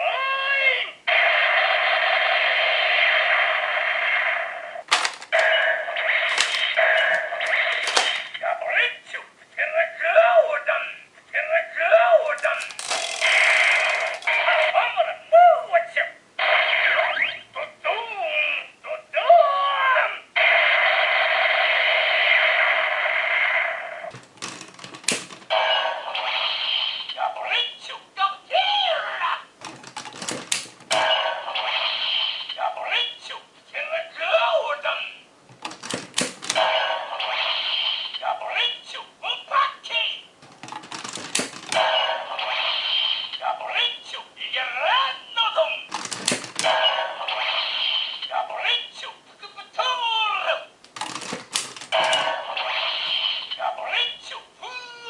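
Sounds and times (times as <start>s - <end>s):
plastic toy mechanism clicks: 4.9s - 5.6s, 6.3s - 8.3s, 12.3s - 14.4s, 24.2s - 25.5s, 29.6s - 31.0s, 35.6s - 36.6s, 40.4s - 41.8s, 45.9s - 46.7s, 50.8s - 52.2s
harsh hissing toy sound effect: 26.0s - 27.2s, 31.5s - 32.6s, 37.2s - 38.2s, 42.3s - 43.4s, 47.3s - 48.3s, 52.5s - 53.6s.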